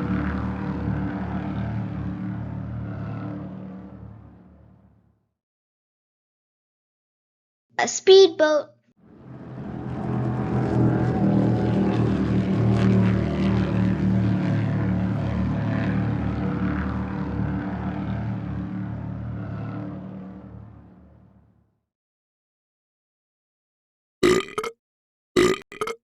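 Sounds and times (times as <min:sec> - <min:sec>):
speedboat engine drone: 0:00.0 - 0:05.0, 0:09.0 - 0:21.6.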